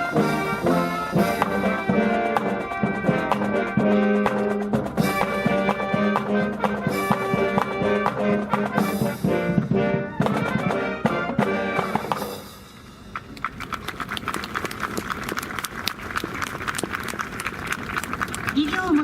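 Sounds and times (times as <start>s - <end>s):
brass band music: 0.0s - 13.1s.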